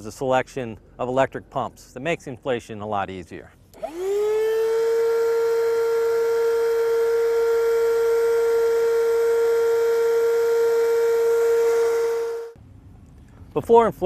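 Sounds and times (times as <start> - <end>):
electric pump with air hiss: 3.8 - 12.6.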